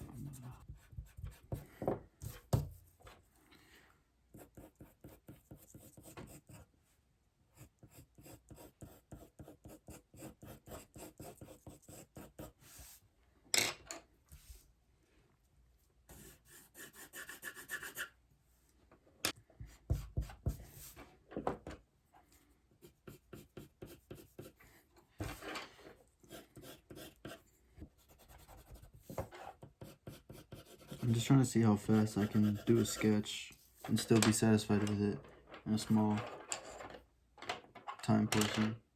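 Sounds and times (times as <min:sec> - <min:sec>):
pencil scratching on paper: 0:00.0 - 0:02.8, 0:04.3 - 0:06.7, 0:07.5 - 0:13.0, 0:16.1 - 0:18.2, 0:19.6 - 0:21.0, 0:22.8 - 0:25.5, 0:26.2 - 0:34.1.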